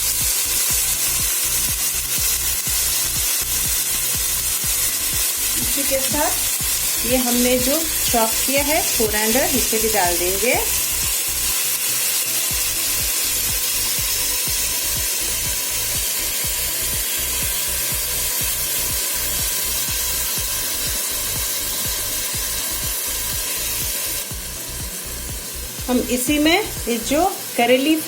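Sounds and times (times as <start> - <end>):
background music: 0.0 - 28.0
meat and onion sizzling in oil: 0.0 - 28.0.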